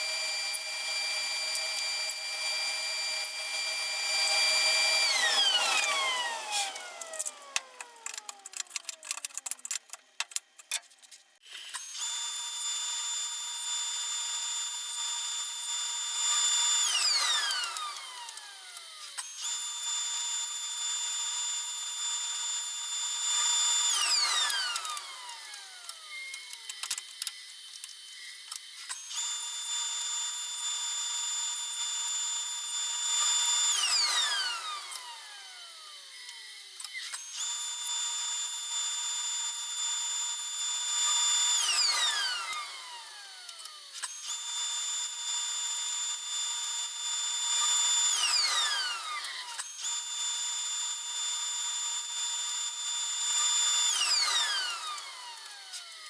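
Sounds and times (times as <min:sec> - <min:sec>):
power drill whining: 0:00.0 - 0:10.6, 0:11.5 - 0:56.0
clicks and handling noise: 0:05.8 - 0:12.0, 0:24.7 - 0:29.1.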